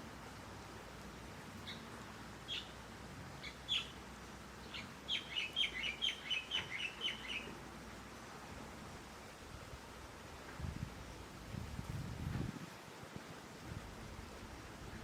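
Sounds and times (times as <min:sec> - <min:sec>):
faint steady hiss: 0:00.0 - 0:15.0
songbird calling: 0:01.6 - 0:02.8, 0:03.4 - 0:07.6.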